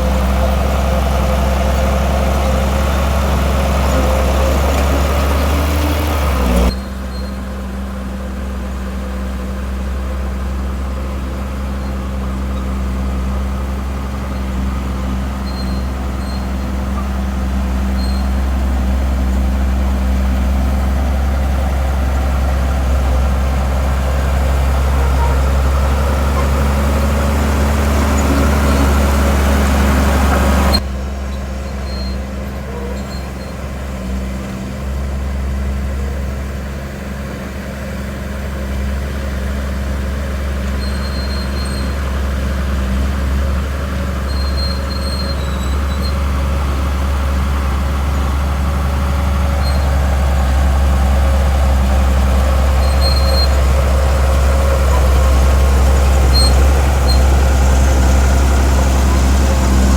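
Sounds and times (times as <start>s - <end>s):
harsh machinery noise: 0.0s - 7.3s, 11.8s - 33.8s, 48.8s - 59.9s
diesel machinery engine drone: 0.0s - 59.9s.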